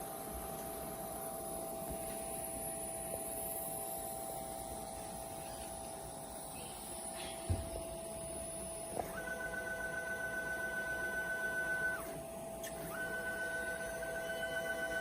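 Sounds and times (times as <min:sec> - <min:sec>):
electrical hum with high whine: 0:00.0 - 0:15.0.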